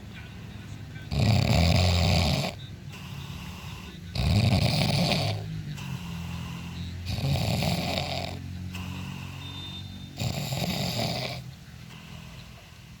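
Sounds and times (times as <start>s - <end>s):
person snoring: 1.1s - 9.6s, 10.2s - 11.4s
quiet breathing: 2.3s - 13.0s.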